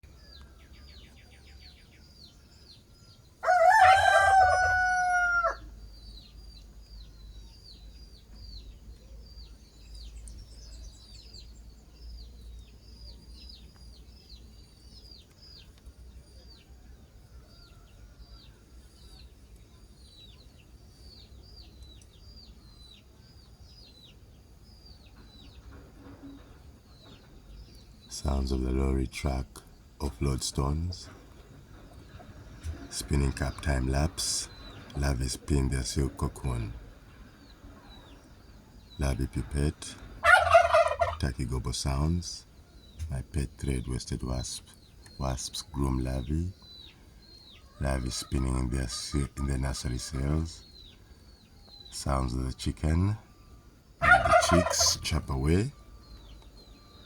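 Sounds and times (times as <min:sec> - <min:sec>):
chicks peeping: 0:00.0 - 0:57.0
rooster crowing: 0:03.4 - 0:05.8, 0:54.0 - 0:54.8.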